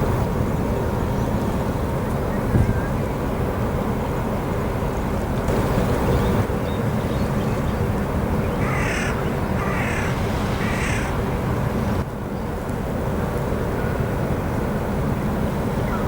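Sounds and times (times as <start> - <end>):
harsh cawing bird calls: 5.5 - 6.5, 8.5 - 11.2
steady low rumble: 5.5 - 8.6.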